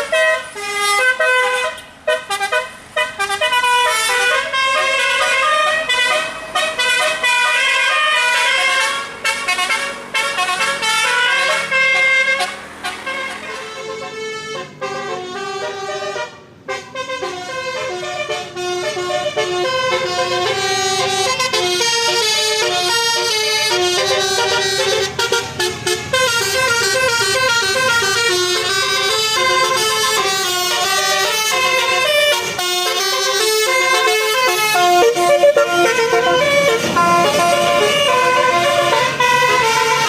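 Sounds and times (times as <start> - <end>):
bus horn playing a tune: 0.0 - 40.0.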